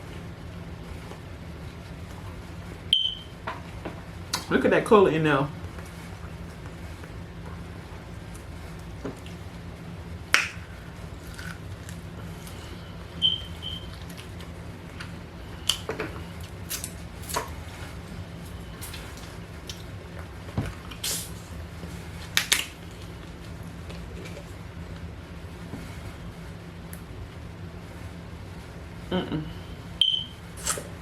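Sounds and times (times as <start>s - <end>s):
steady low hum: 0.0s - 31.0s
chewing with mouth clicks: 11.2s - 12.6s, 13.6s - 17.5s.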